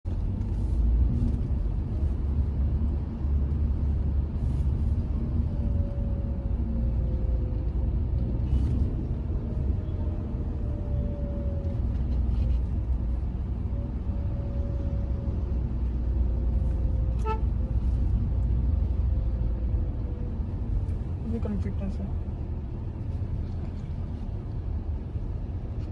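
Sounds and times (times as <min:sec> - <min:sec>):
car road and engine rumble: 0:00.0 - 0:25.9
car horn toot: 0:17.2 - 0:17.5.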